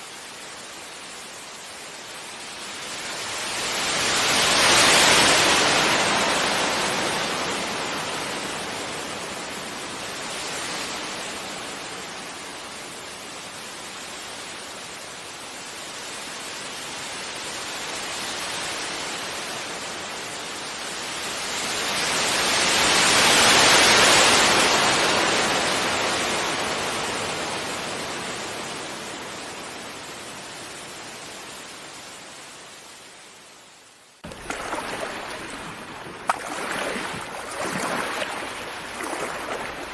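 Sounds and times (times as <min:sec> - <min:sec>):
sea waves washing onto beach: 0:00.0 - 0:13.1, 0:34.2 - 0:39.9
large wave breaking: 0:34.2 - 0:39.9.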